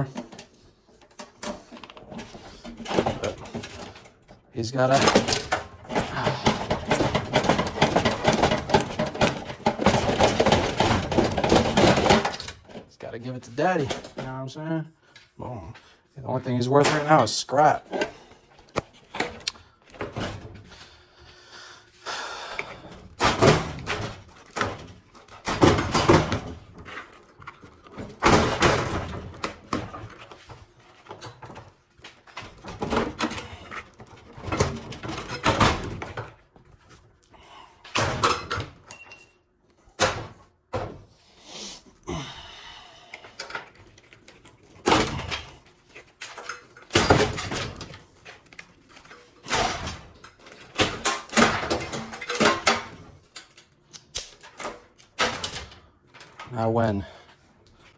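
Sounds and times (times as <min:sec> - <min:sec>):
metal parts knocking and clanking: 0:00.0 - 0:13.0, 0:22.9 - 0:36.4, 0:43.4 - 0:56.8.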